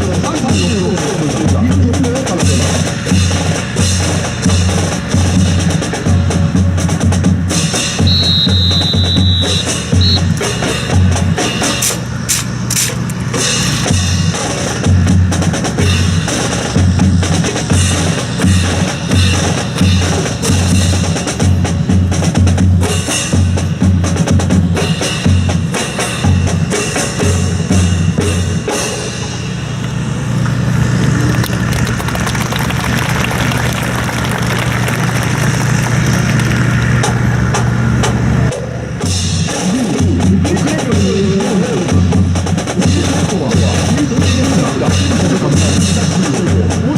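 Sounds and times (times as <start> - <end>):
bass drum beats: 0.0 - 11.5.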